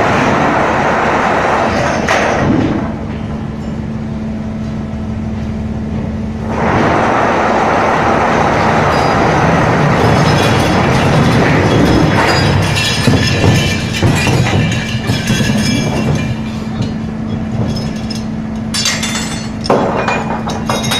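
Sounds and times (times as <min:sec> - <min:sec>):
loud rushing noise: 0:00.0 - 0:03.0, 0:06.3 - 0:18.1
ship machinery humming: 0:00.0 - 0:20.9
clinks and knocks: 0:08.9 - 0:20.9.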